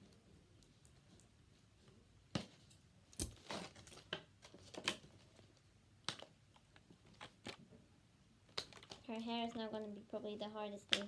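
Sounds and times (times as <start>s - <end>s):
plastic packaging clicks and crinkles: 2.4s - 7.8s, 8.5s - 10.0s, 10.7s - 11.0s.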